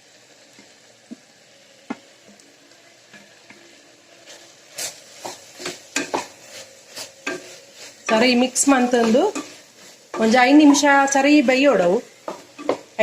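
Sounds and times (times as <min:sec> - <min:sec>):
sizzling in a frying pan: 0:00.0 - 0:13.0
spoon scraping pan: 0:04.2 - 0:11.5, 0:12.1 - 0:12.9.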